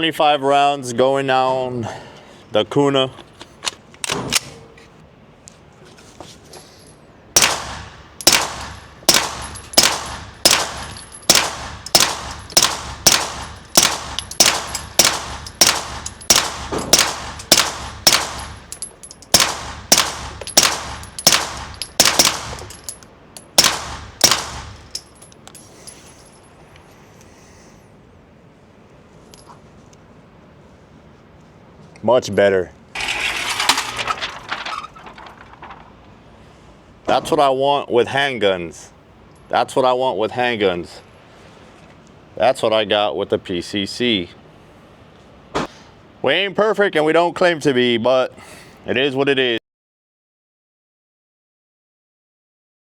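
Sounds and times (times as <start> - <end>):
suppressed pistol shots: 7.4 - 18.7, 19.3 - 22.8, 23.6 - 24.8.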